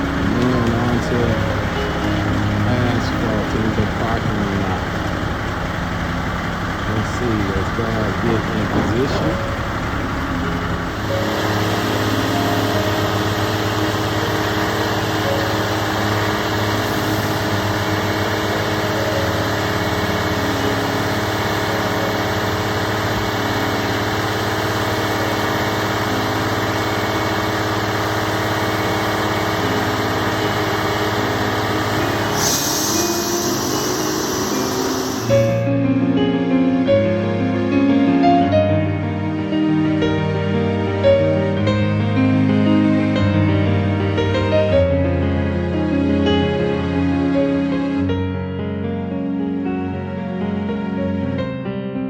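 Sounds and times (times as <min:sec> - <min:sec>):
construction machinery engine running: 0:00.0 - 0:51.4
high hiss: 0:16.6 - 0:18.7, 0:32.0 - 0:35.7.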